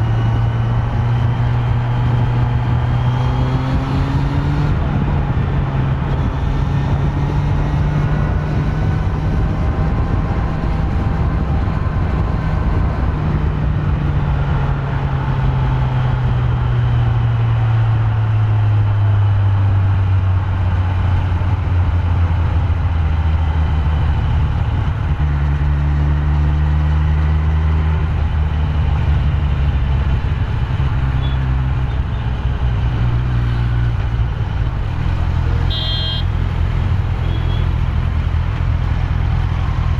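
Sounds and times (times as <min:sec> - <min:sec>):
motorcycle engine running: 0:27.2 - 0:39.9.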